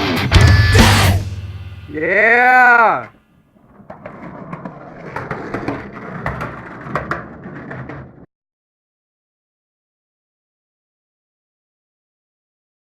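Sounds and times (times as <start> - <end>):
music: 0.0 - 2.1
skateboard rolling over pavement: 3.4 - 8.3.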